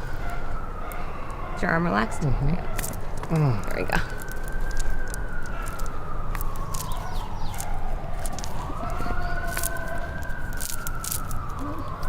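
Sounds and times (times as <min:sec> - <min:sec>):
emergency siren wailing: 0:00.0 - 0:12.0.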